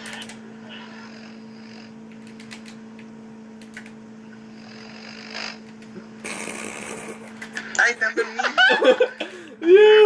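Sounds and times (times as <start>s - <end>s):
computer keyboard clicks: 0.0s - 0.4s, 2.1s - 4.0s
steady electrical hum: 0.0s - 10.0s.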